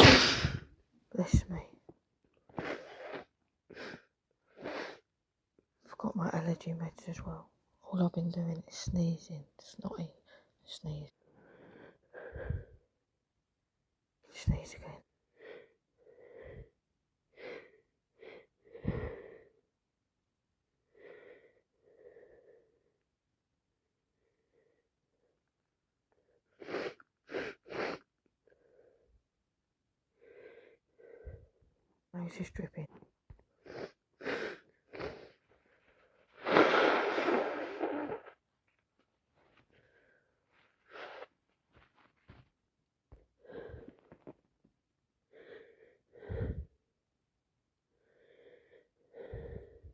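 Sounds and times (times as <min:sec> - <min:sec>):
person sneezing: 0:00.0 - 0:00.7, 0:36.4 - 0:38.4
woman sneezing and sniffing: 0:00.0 - 0:00.7, 0:02.5 - 0:05.1, 0:26.6 - 0:28.1, 0:33.6 - 0:35.4, 0:36.2 - 0:38.4, 0:40.8 - 0:41.3.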